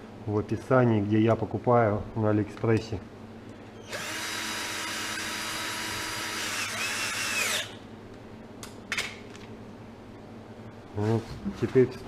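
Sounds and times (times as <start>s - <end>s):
power drill running: 3.8s - 7.8s.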